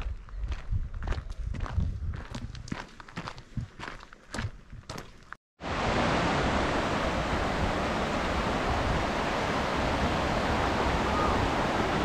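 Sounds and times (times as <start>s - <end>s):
waterfall roaring: 5.6s - 12.0s.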